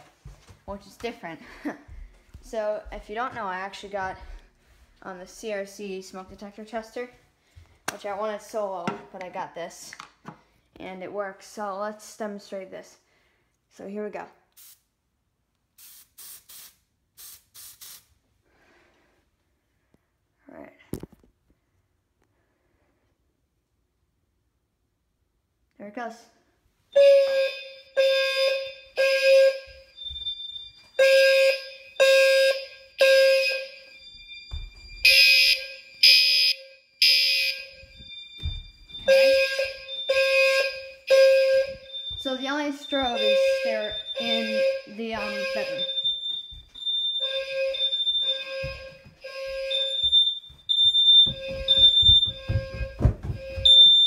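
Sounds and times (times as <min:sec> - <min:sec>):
fire alarm horns pulsing: 0:26.9 - 0:54.0.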